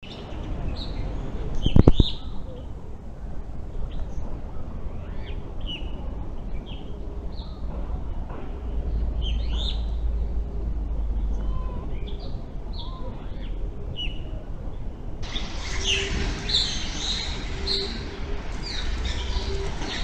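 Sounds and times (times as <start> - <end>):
birds chirping and tweeting: 0.0 - 20.0
steady background hum: 0.1 - 20.0.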